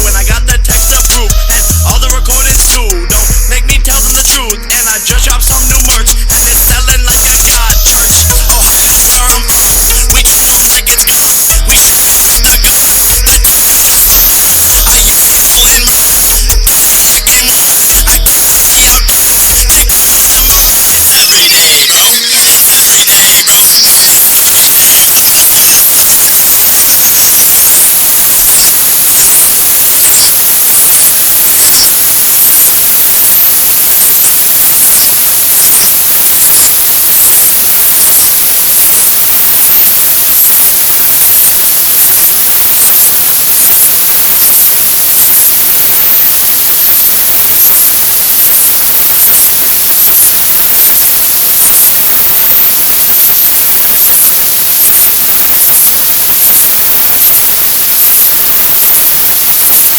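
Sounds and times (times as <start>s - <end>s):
faint regular beat: 0.0s - 21.0s
harsh static-like hiss: 5.8s - 59.9s.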